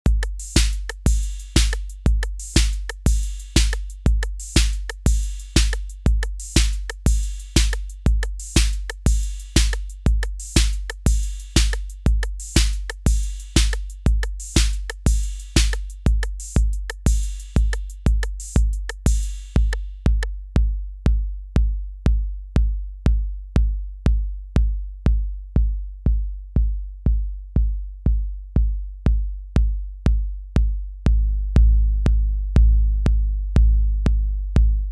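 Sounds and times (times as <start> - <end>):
hi-hats and bright percussion: 0.0 - 20.5
booming bass drum: 0.0 - 34.9.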